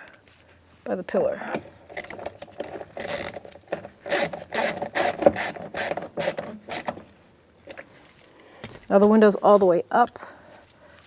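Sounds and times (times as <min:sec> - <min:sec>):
screwdriver rasping on screw: 0:03.0 - 0:07.0.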